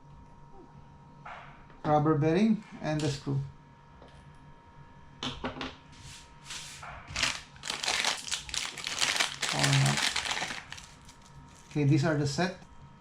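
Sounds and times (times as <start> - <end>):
plastic packaging crinkling: 6.5 - 11.9.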